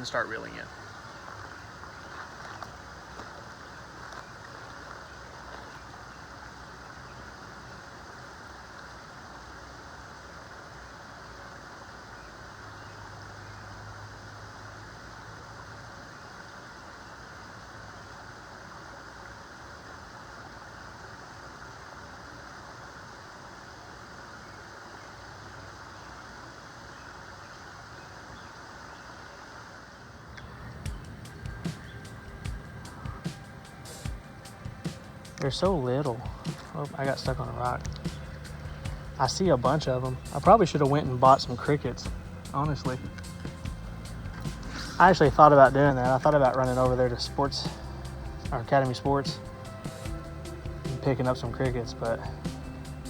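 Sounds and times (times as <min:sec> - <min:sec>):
creek water flowing: 0:00.0 - 0:53.0
low hum: 0:30.2 - 0:53.0.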